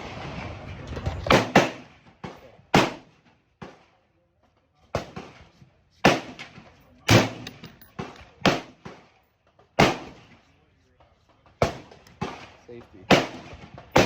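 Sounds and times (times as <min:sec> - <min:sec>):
faint distant gunshots: 0:05.0 - 0:09.2, 0:09.8 - 0:10.4, 0:11.6 - 0:14.0
loud gunshots with echo: 0:07.1 - 0:07.6, 0:09.8 - 0:10.2, 0:11.6 - 0:14.0.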